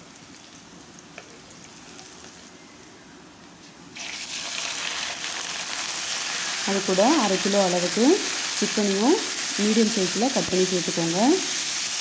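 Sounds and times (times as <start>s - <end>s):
shallots sizzling in oil: 4.0s - 12.0s.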